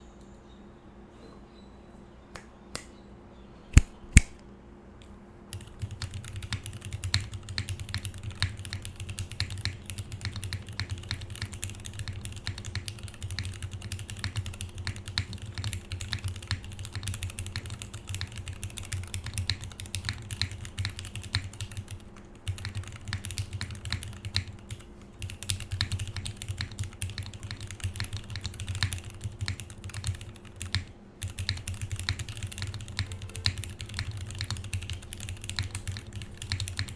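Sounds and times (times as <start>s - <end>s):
sharp clicks: 3.7s - 4.4s
mechanical keyboard typing: 5.5s - 36.9s.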